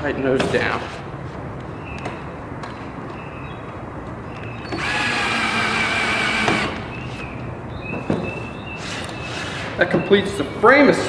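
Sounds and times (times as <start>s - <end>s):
cordless drill driving screw: 4.6s - 7.0s.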